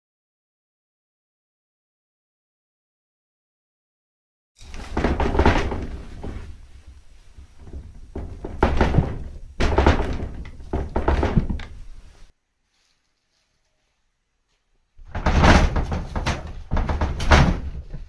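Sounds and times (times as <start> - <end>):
sliding paper screen thumping: 4.6 - 12.3, 15.0 - 18.0
kittens scrabbling: 15.0 - 18.0.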